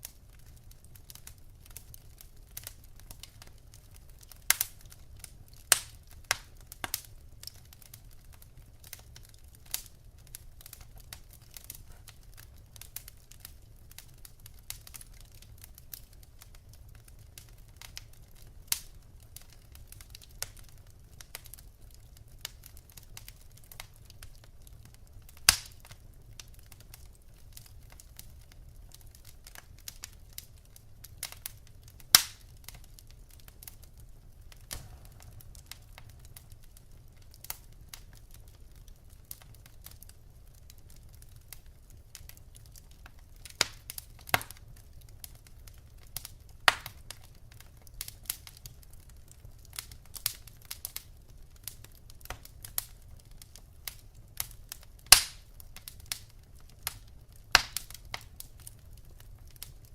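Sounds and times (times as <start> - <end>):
wood fire crackling: 0.0 - 59.9
low steady rumble: 34.3 - 38.3.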